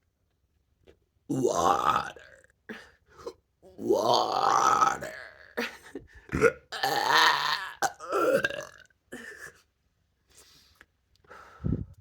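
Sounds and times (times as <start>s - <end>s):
person belching: 1.3s - 2.5s, 3.6s - 5.7s, 6.3s - 9.3s.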